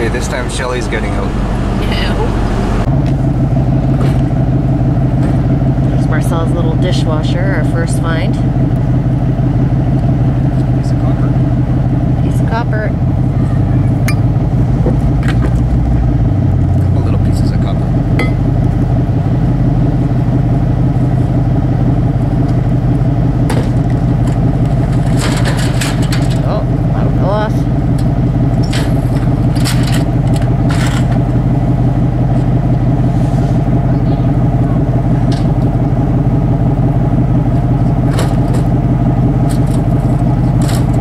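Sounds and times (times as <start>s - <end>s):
engine humming: 0.0s - 41.0s.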